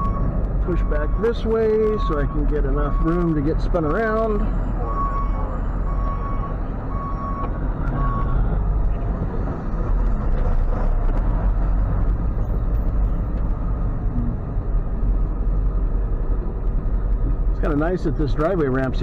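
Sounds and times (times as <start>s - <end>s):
truck reversing alarm beeps: 0.0s - 8.5s.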